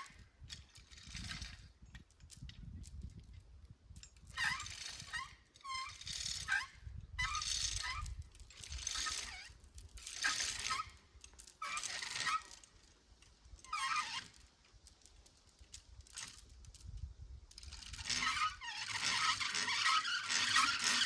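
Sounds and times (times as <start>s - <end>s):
chain hoist clattering: 0.1s - 3.2s, 3.9s - 21.0s
hoist squeak: 4.2s - 11.0s, 11.6s - 12.7s, 13.7s - 14.4s, 17.9s - 21.0s.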